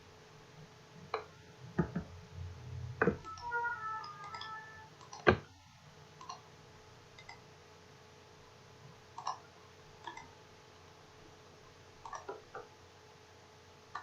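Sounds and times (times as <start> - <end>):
faint steady hum: 0.0 - 14.0
high chime-like tones: 3.2 - 4.9
computer mouse clicks: 4.2 - 5.4, 6.2 - 6.4, 7.2 - 7.4, 9.2 - 9.4, 10.0 - 10.3, 12.0 - 12.7.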